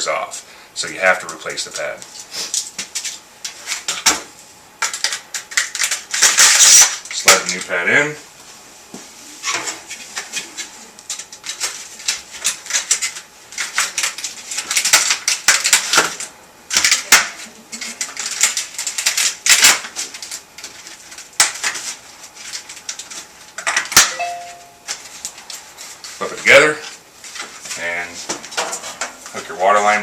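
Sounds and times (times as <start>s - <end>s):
humidifier pad clicking and scraping: 8.9s - 24.0s, 24.9s - 30.0s.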